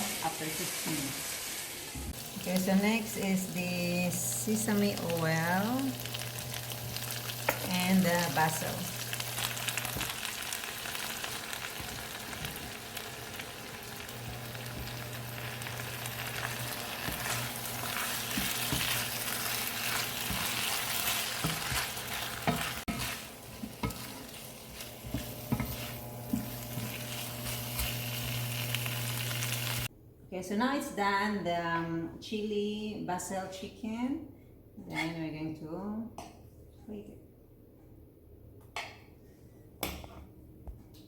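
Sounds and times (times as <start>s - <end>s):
chicken sizzling in a pan: 0.0s - 29.9s
spatula scraping and knocking pan: 11.2s - 28.5s.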